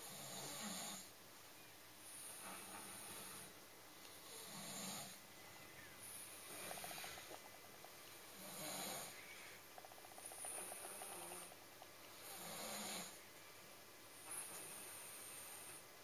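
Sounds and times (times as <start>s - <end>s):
dog snoring: 0.0s - 1.1s, 2.1s - 3.6s, 4.2s - 5.2s, 6.0s - 7.5s, 8.2s - 9.2s, 9.8s - 13.2s, 14.2s - 15.8s.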